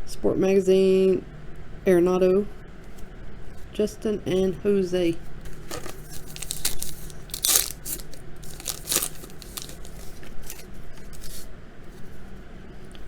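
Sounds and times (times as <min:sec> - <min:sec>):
cards shuffled by hand: 0:05.4 - 0:11.5.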